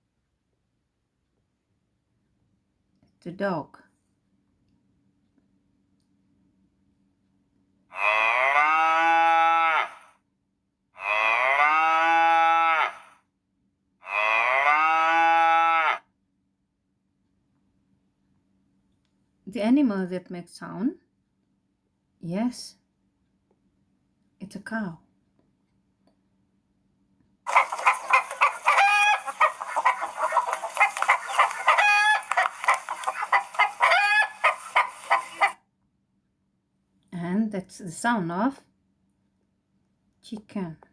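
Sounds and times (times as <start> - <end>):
cow mooing: 7.9 - 10.0, 11.0 - 13.1, 14.0 - 16.0
chickens clucking: 27.5 - 35.6.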